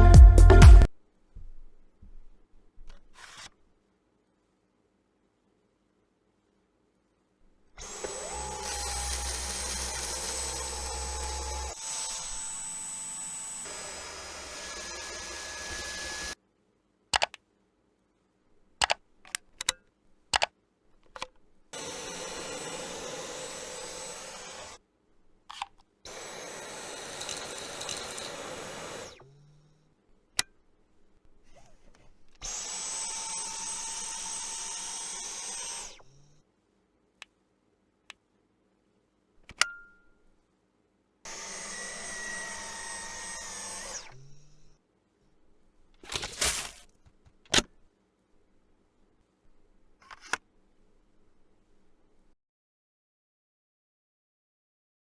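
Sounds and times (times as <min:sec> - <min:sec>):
stick vacuum motor whining: 0:07.8 - 0:16.4, 0:21.8 - 0:24.8, 0:26.1 - 0:29.4, 0:32.4 - 0:36.3, 0:41.3 - 0:44.7.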